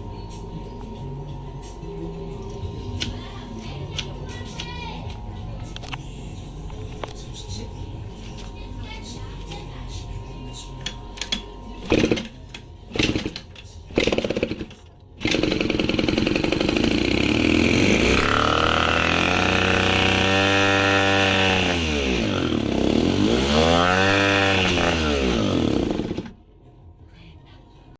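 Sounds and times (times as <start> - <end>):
two-stroke scooter engine revving: 11.3 - 26.4.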